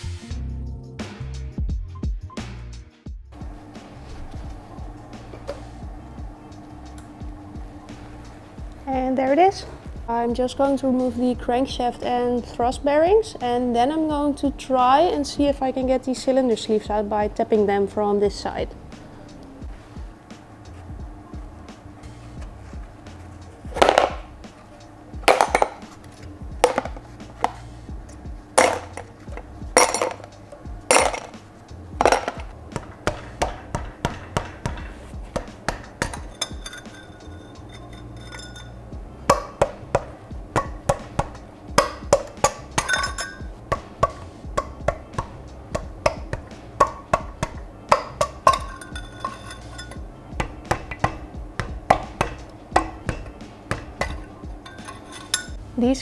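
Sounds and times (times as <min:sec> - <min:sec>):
background music: 0:00.0 - 0:56.0
hammer knocking on metal: 0:25.2 - 0:31.4, 0:32.0 - 0:55.6.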